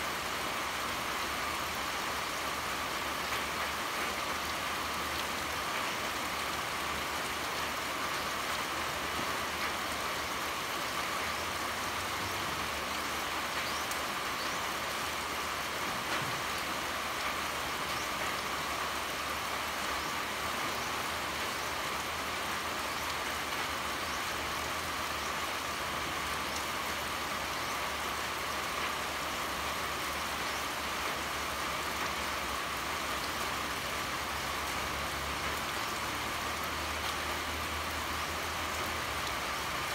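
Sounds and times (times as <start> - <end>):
pouring rain hiss: 0.0 - 39.9
faint raindrop ticks: 12.9 - 14.6.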